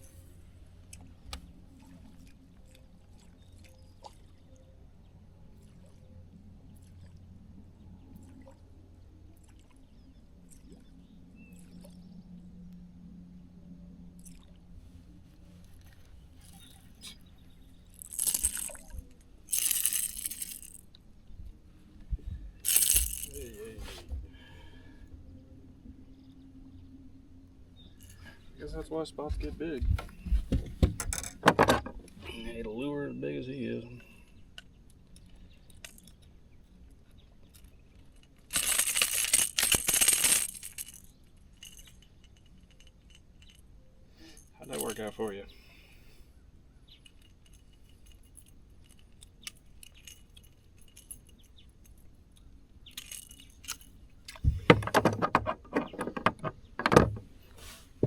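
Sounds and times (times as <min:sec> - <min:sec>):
metallic rattling and jingling: 0:16.4 - 0:20.8, 0:22.6 - 0:23.7, 0:37.4 - 0:45.4, 0:46.9 - 0:52.2, 0:52.8 - 0:57.5.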